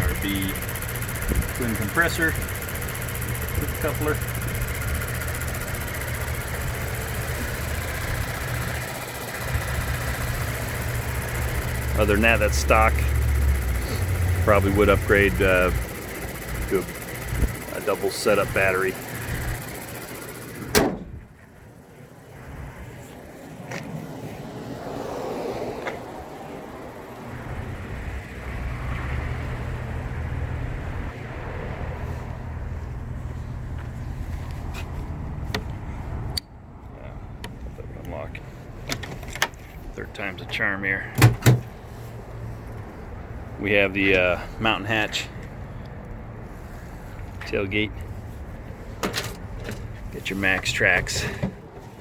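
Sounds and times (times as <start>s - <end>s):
vehicle engine idling: 0.0s - 23.5s, 26.7s - 52.0s.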